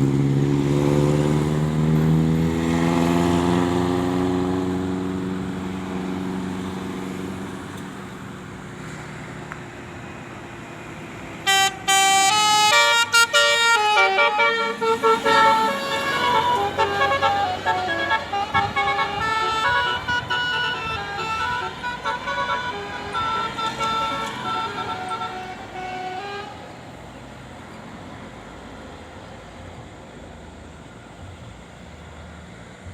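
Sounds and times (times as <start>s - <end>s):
musical bus horn tune: 11.3s - 27.1s.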